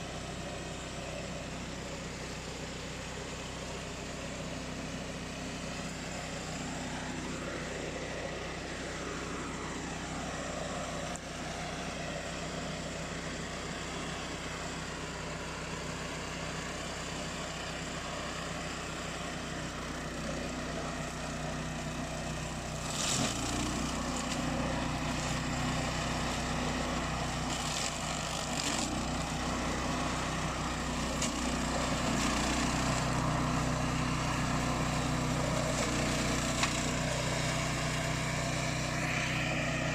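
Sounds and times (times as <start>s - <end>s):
mower engine running: 0.0s - 39.9s.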